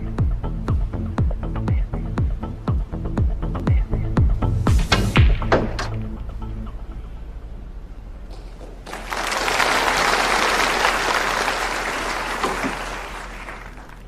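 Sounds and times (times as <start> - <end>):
audience applauding: 8.4 - 14.0.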